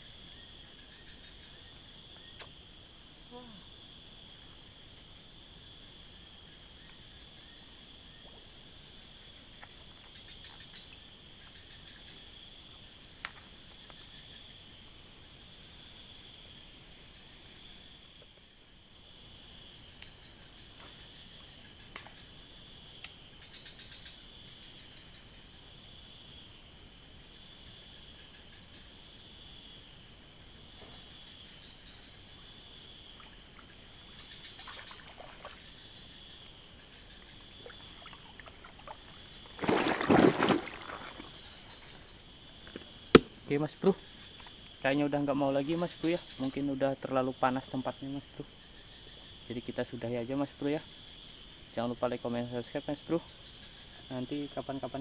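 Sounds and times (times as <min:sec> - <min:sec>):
insects droning: 0:00.0 - 0:55.0
faint sharp clicks: 0:02.4 - 0:02.6, 0:20.0 - 0:20.2, 0:23.0 - 0:23.2.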